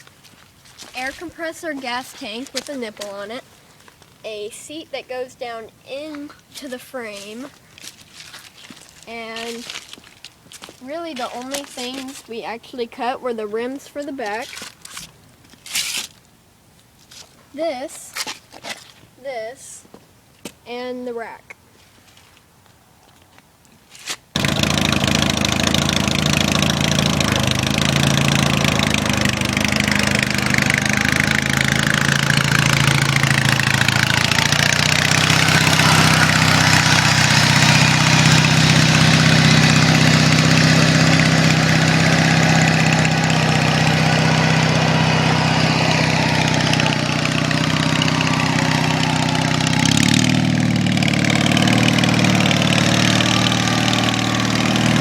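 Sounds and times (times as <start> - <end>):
riding mower engine running: 24.3 - 55.0.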